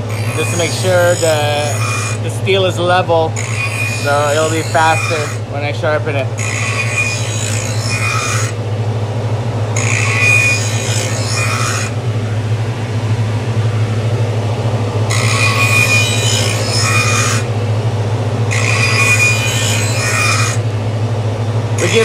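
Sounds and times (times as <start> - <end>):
steel grinding on wheel: 0.0 - 5.8, 6.4 - 8.6, 9.8 - 12.0, 15.1 - 17.6, 18.5 - 20.6, 21.8 - 22.0
grinder motor humming: 0.0 - 22.0.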